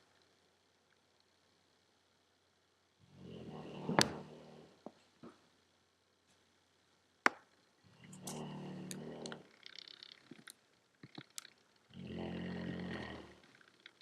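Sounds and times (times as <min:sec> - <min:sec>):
dog snoring: 0:03.0 - 0:04.8, 0:07.9 - 0:09.5, 0:11.9 - 0:13.4.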